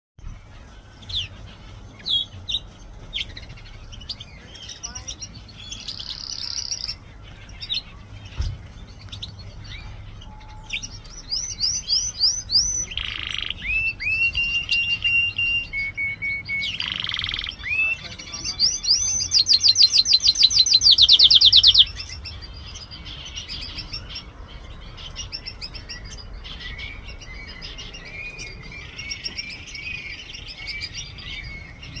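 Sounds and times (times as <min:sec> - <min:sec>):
songbird singing: 0:00.2 - 0:32.0.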